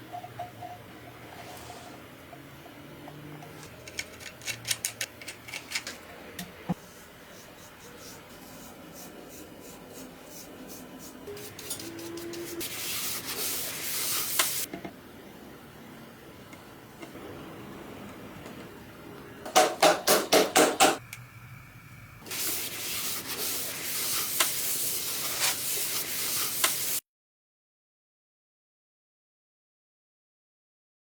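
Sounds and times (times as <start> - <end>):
sanding wood scraping: 6.8 - 14.7, 22.3 - 27.0.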